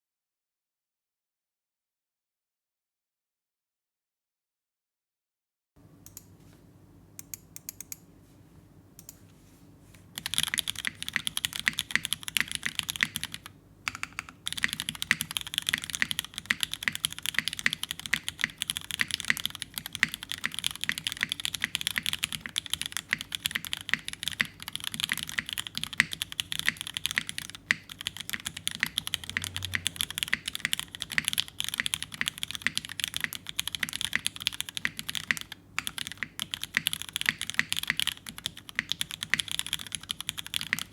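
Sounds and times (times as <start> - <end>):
mechanical keyboard typing: 10.2 - 40.9.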